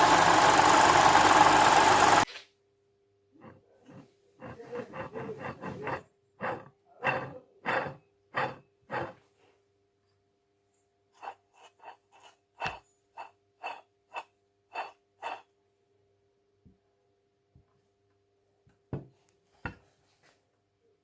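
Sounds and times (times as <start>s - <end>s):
car engine running with faint whine: 0.0s - 2.2s.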